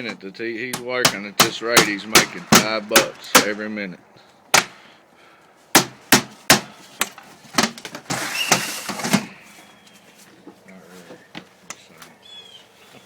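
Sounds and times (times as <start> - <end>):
hammer striking wood: 0.7 - 3.6, 4.5 - 4.8, 5.7 - 7.2.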